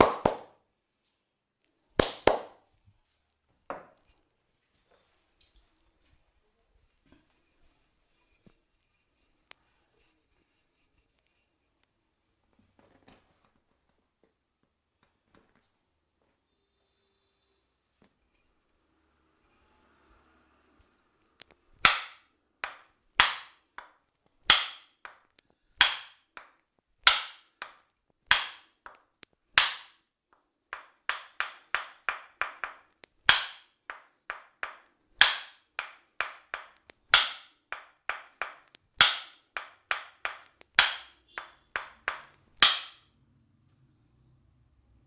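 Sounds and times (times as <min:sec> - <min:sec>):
massage gun slapping strikes: 0:00.0 - 0:00.6, 0:02.0 - 0:02.6, 0:30.8 - 0:43.0.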